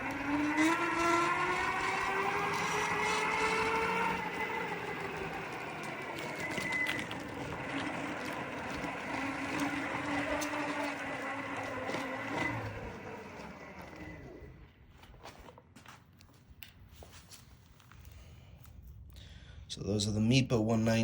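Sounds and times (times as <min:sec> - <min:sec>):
metallic grinding: 0:00.0 - 0:14.6
electric motor whining: 0:00.0 - 0:14.7
wheels rumbling on pavement: 0:00.0 - 0:15.7.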